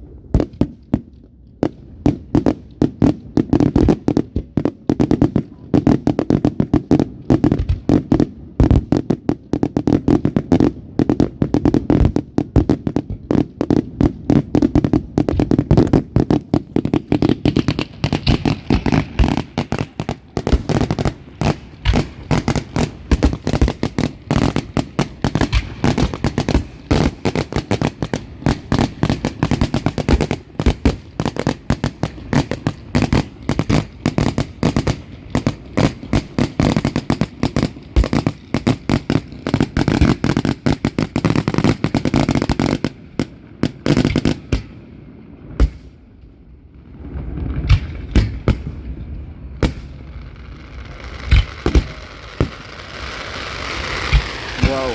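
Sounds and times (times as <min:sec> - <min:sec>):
fireworks bangs and crackles: 0:00.0 - 0:54.9
rising rumble: 0:52.3 - 0:54.9.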